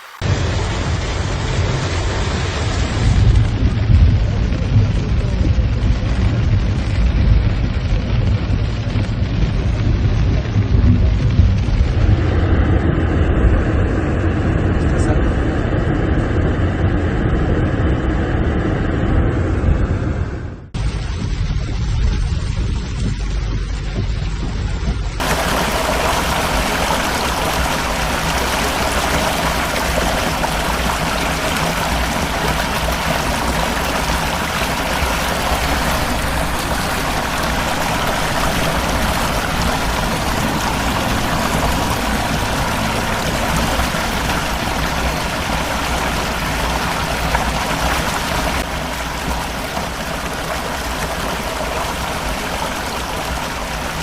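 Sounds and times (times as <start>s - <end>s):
floodwater rushing: 0.0s - 3.4s, 25.2s - 54.0s.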